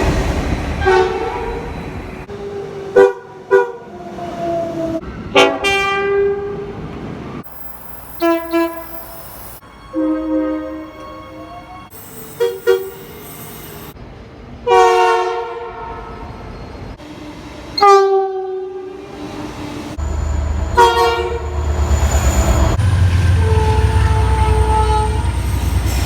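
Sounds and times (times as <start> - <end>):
train low rumble: 0.0 - 26.0
locomotive air horn blasts: 0.8 - 1.6, 5.4 - 6.6, 8.2 - 9.1, 9.9 - 13.2, 14.7 - 16.2, 17.8 - 19.0, 20.7 - 21.5, 23.3 - 25.4.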